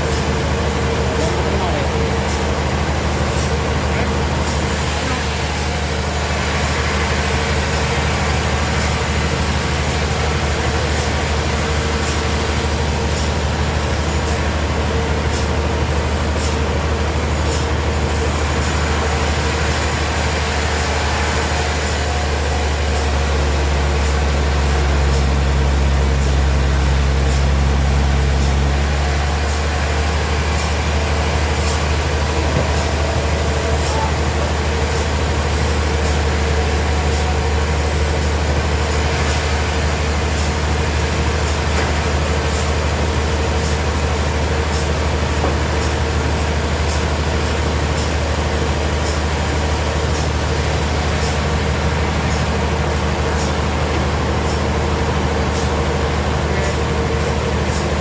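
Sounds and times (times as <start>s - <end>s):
sawmill machinery humming: 0.0s - 58.0s.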